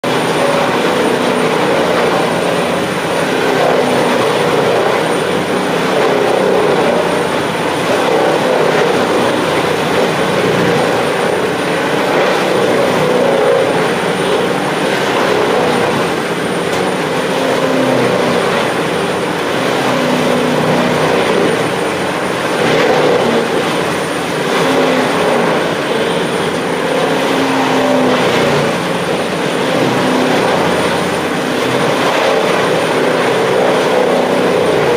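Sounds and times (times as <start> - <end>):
diesel engine under load: 0.0 - 34.9.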